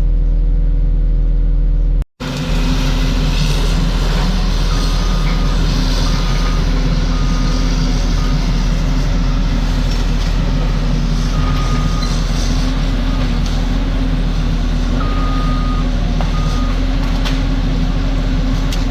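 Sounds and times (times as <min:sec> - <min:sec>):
heavy equipment engine running: 0:00.0 - 0:18.9
backup alarm beeping: 0:04.6 - 0:09.8, 0:11.3 - 0:12.3, 0:15.0 - 0:16.9.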